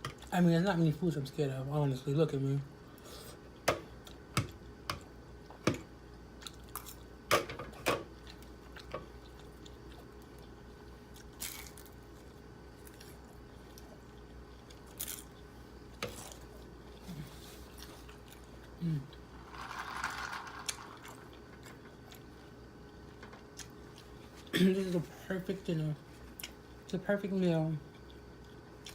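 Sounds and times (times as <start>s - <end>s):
person chewing crunchy food: 6.2s - 7.2s, 8.1s - 19.3s, 20.6s - 24.5s, 27.9s - 28.9s.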